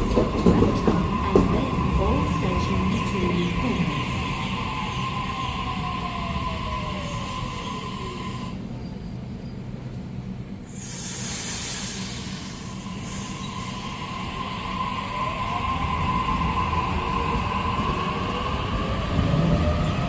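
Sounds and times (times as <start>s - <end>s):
air hiss burst: 10.7s - 13.8s.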